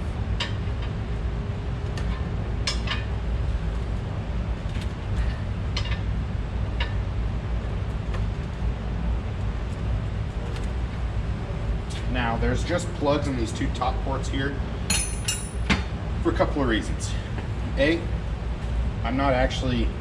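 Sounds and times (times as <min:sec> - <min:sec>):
steady low rumble: 0:00.0 - 0:20.0
wrench clinking on steel tank: 0:14.9 - 0:15.8.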